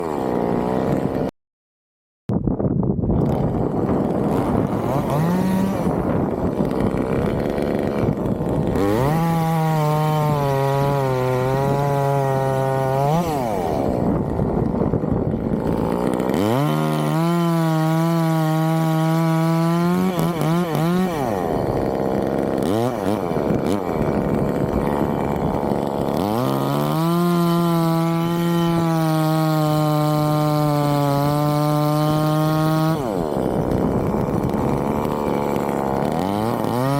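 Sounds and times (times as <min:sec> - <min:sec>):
chainsaw engine revving: 0:00.0 - 0:01.3, 0:03.1 - 0:36.9.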